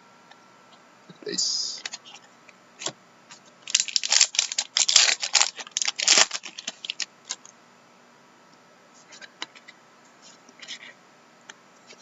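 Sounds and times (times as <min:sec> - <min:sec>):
card packaging crinkling: 0:03.6 - 0:07.4.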